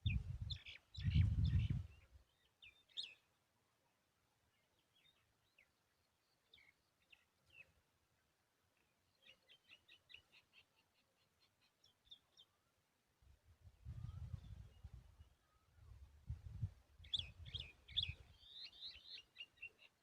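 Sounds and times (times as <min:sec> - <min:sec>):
faint high bird chirps: 0:08.8 - 0:12.8, 0:13.8 - 0:16.0, 0:17.0 - 0:20.0.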